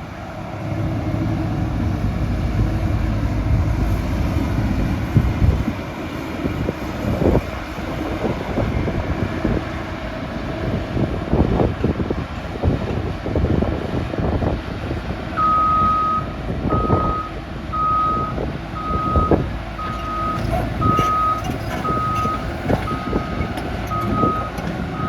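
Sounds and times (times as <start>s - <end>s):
excavator diesel engine running: 0.0s - 25.0s.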